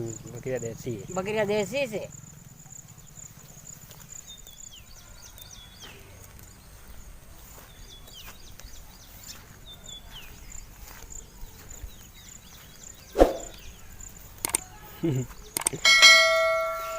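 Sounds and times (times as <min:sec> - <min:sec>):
pulsing insect trill: 0:00.0 - 0:05.6, 0:10.5 - 0:16.9
sharp knock: 0:13.2 - 0:13.6.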